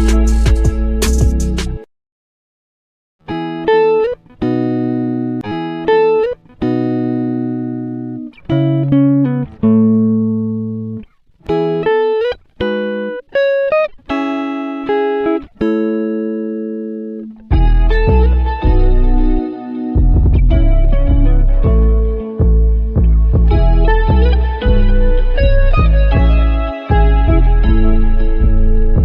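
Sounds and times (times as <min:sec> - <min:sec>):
plucked string instrument: 0:17.2 - 0:29.0.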